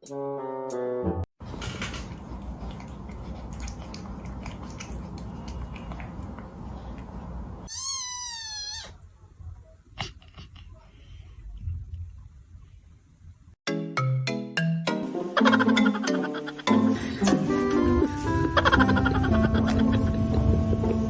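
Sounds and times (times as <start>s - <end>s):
cat meowing: 7.7s - 9.0s
low rumbling noise: 17.1s - 21.0s.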